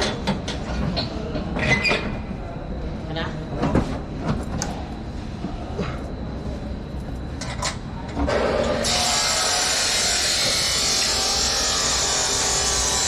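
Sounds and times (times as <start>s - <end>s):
power tool whirring: 8.8s - 13.0s.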